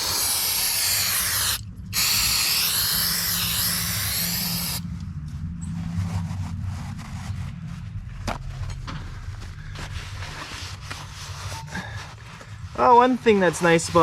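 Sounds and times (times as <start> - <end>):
aerosol spray can hissing: 0.0 - 4.8.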